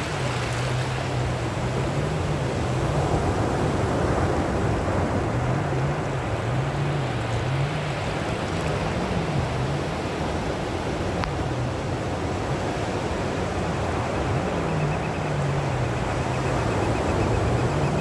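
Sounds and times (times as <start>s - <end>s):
sea surf washing: 0.0s - 18.0s.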